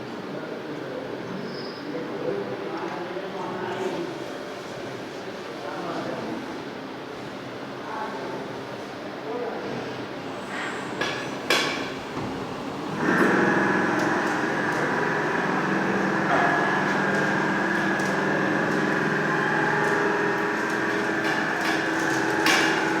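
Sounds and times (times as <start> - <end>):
lathe machine whine: 10.3 - 23.0.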